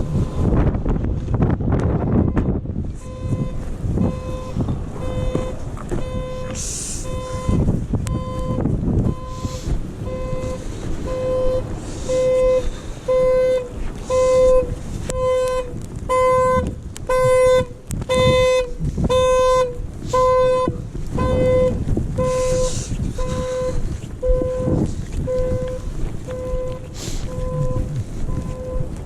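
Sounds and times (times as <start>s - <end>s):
vehicle alarm honking beeps: 0.0s - 0.6s, 2.2s - 29.0s
wind noise on microphone: 0.0s - 29.0s.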